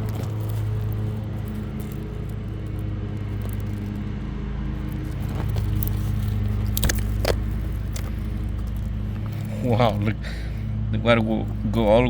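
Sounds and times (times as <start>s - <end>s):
steady motor hum: 0.0s - 12.0s.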